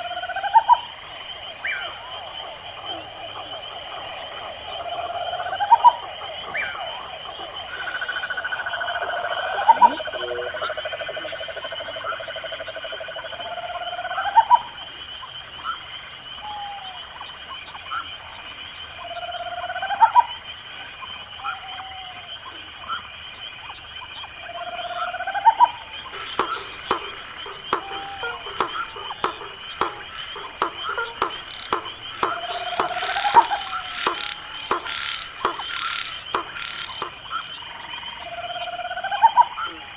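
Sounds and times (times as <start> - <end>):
crickets trilling: 0.0 - 39.9
quick clicks: 26.1 - 35.8
lower rising call: 26.2 - 34.9.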